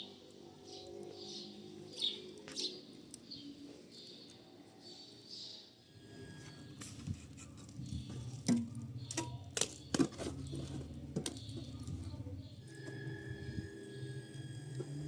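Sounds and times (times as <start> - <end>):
low steady hum: 5.8 - 15.0.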